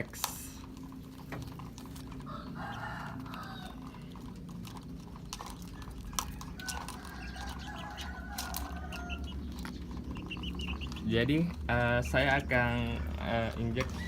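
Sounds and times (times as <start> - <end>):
chickens calling faintly: 0.0 - 14.0.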